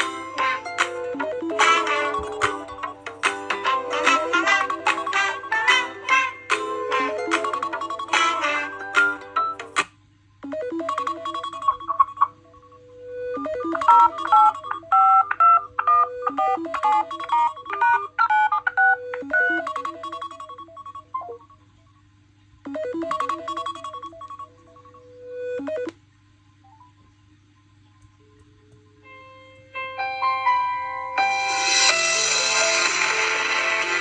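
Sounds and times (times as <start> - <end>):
phone ringtone melody: 0.0 - 9.8, 30.0 - 34.0.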